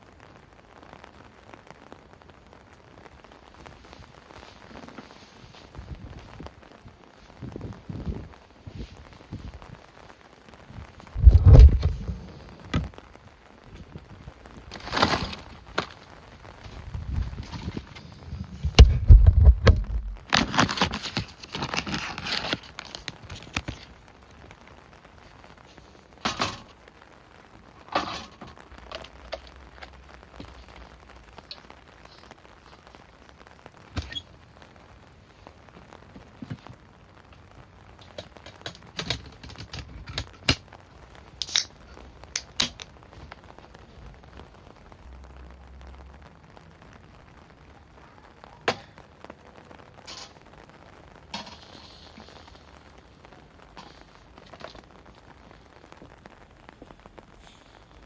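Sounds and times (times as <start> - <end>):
dense rustle: 3.0 - 47.5
sharp clicks and light knocks: 13.7 - 24.5, 35.7 - 43.5
heavy thump: 18.5 - 20.2.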